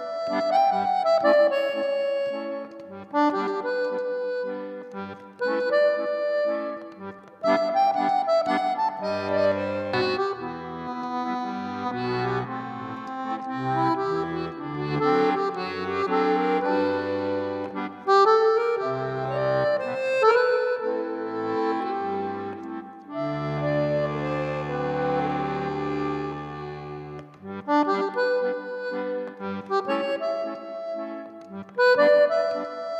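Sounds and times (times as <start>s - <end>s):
instrumental background music: 0.0s - 32.9s.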